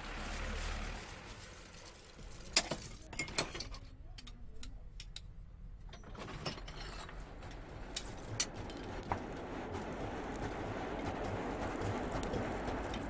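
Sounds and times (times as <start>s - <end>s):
metal tools clinking and tapping: 2.5s - 8.9s.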